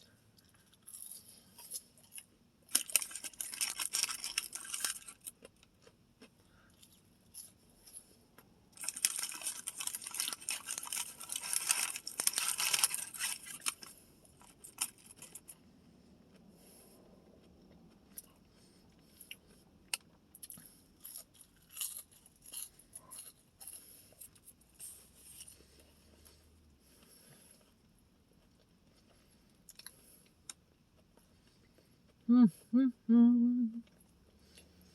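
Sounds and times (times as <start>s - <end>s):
fried food crackling and crinkling: 0.4s - 7.9s, 8.7s - 15.6s, 19.2s - 26.4s.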